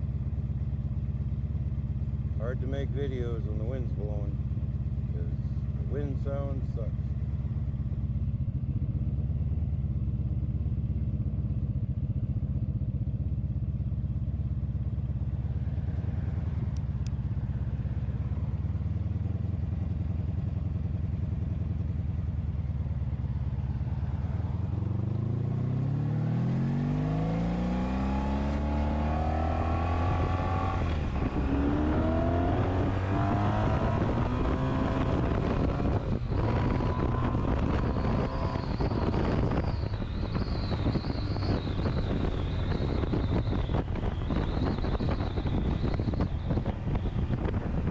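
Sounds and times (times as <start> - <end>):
motorcycle engine running: 0.0 - 47.9.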